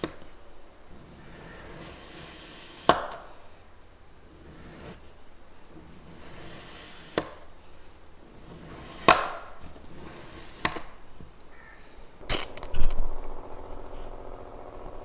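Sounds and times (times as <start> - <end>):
blade tapping surface: 10.4 - 10.9.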